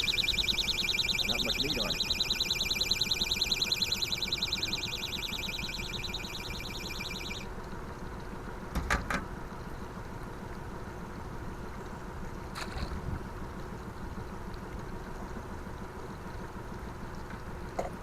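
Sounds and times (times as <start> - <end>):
electronic alarm beeping rapidly: 0.0 - 7.4.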